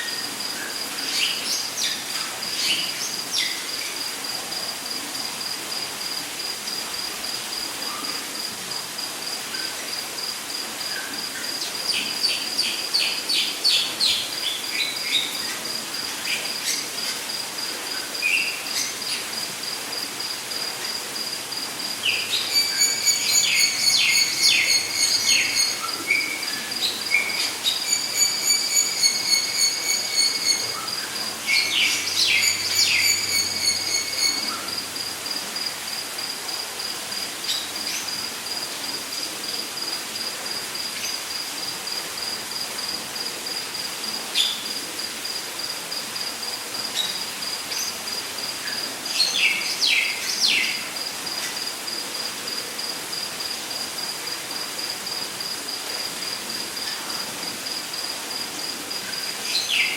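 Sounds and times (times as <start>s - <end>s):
steady hiss: 0.0s - 59.9s
insect trilling: 20.2s - 35.7s.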